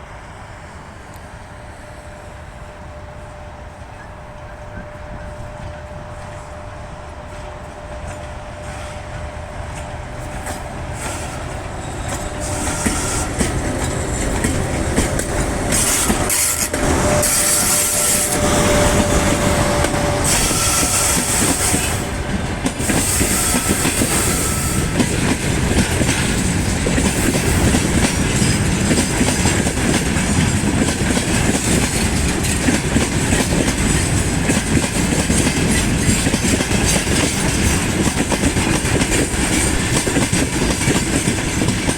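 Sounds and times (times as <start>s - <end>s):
train wheels clattering over rail joints: 7.2s - 41.9s
high wheel squeal: 10.2s - 22.2s, 22.8s - 25.2s.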